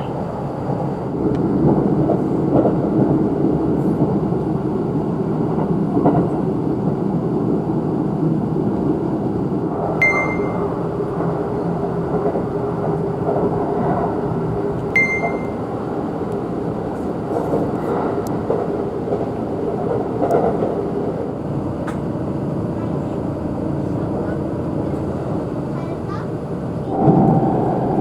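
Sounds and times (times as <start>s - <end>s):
train wheels rumbling on rail: 0.0s - 10.0s, 10.6s - 28.0s
brief high ping: 10.0s - 10.7s, 15.0s - 15.7s.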